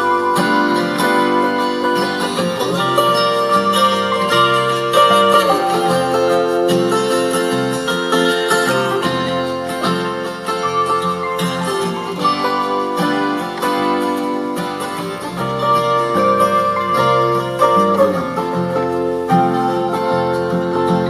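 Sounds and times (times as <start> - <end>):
plucked string music: 0.0 - 21.0.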